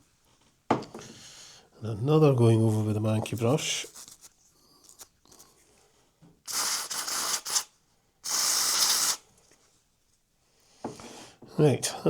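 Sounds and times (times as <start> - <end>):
aerosol spray can hissing: 6.5 - 9.2.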